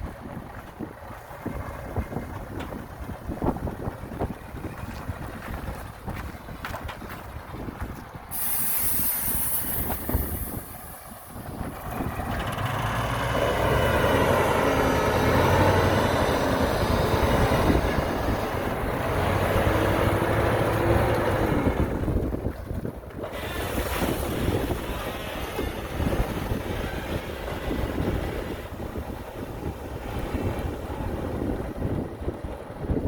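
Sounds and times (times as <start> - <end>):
diesel engine low rumble: 0.0 - 33.0
brief high hiss: 8.3 - 11.1.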